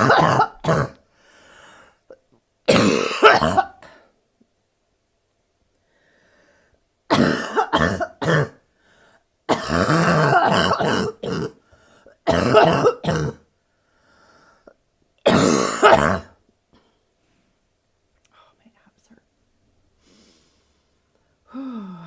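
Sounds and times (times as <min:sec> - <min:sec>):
woman coughing harshly: 0:00.0 - 0:01.0, 0:02.7 - 0:04.0, 0:07.1 - 0:08.6, 0:09.5 - 0:11.6, 0:12.2 - 0:13.4, 0:15.2 - 0:16.4.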